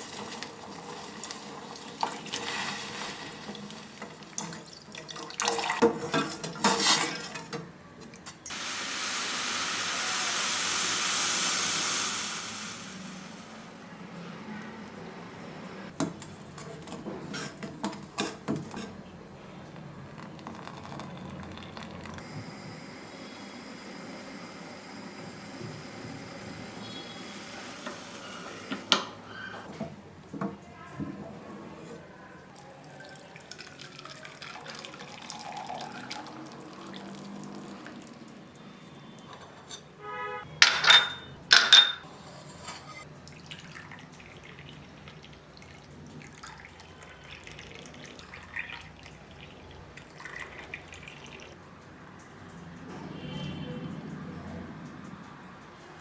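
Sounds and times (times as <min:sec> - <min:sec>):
utensils clinking: 0:40.6 - 0:43.1.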